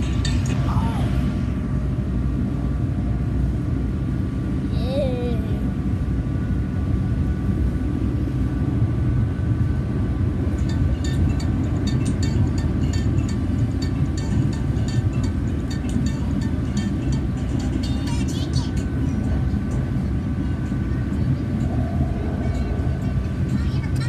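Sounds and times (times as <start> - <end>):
train rumble: 0.0 - 24.0
faint whine: 18.9 - 24.0.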